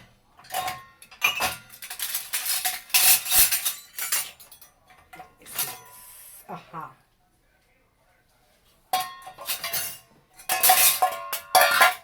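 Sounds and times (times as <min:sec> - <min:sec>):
metal dishes and utensils clinking: 0:00.0 - 0:06.2, 0:08.9 - 0:12.0.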